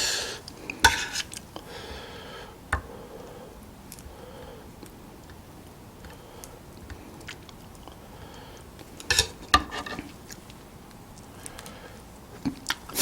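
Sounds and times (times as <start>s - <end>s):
soft chewing: 4.8s - 9.1s, 10.0s - 13.0s.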